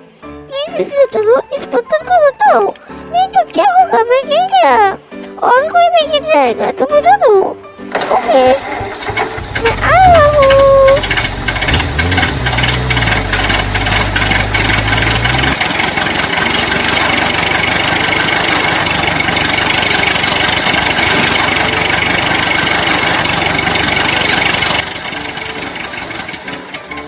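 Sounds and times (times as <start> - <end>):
toy vehicle engine running: 8.4 - 27.0.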